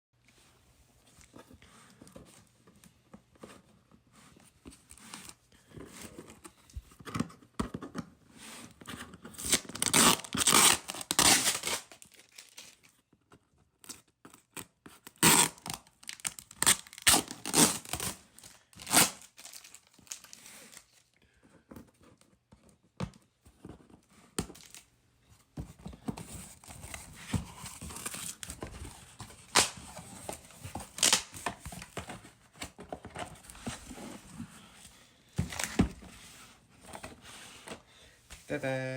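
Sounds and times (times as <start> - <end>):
packaging being torn and crinkled: 9.4 - 13.0, 13.8 - 21.0, 30.9 - 31.4.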